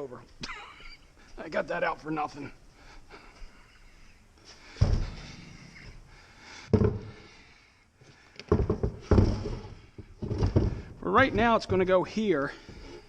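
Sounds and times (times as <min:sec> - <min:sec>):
heavy thuds and clunks: 0:04.6 - 0:07.6, 0:08.2 - 0:13.0.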